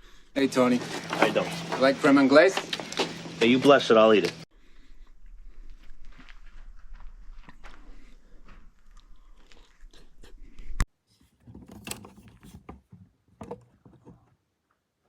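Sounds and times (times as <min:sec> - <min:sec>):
breathing: 0:00.0 - 0:00.4, 0:04.5 - 0:06.2, 0:07.6 - 0:10.8
person chewing: 0:07.3 - 0:10.8.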